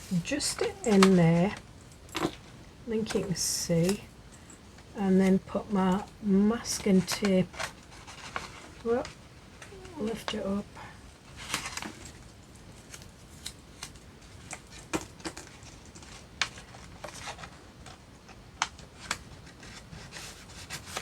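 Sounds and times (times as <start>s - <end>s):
paper rustling: 0.0s - 2.4s.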